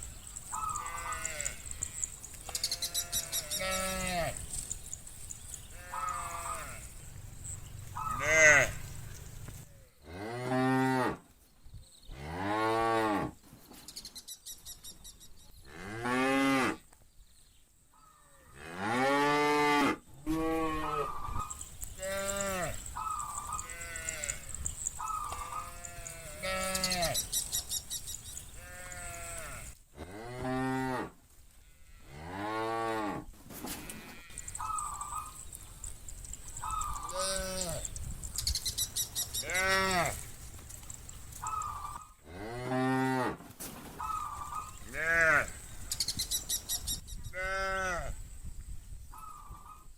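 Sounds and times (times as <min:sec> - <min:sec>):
cattle mooing: 0:08.0 - 0:08.9.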